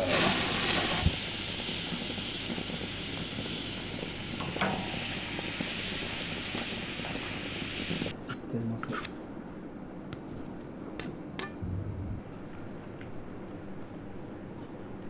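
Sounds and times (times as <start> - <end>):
steady hiss: 0.0 - 8.1.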